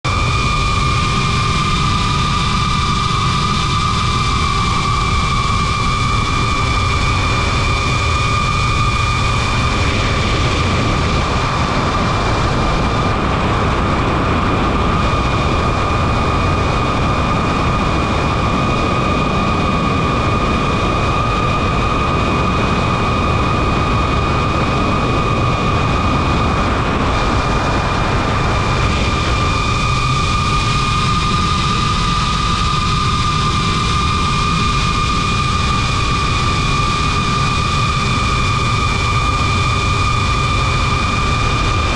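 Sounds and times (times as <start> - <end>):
wind rushing: 0.1 - 41.9.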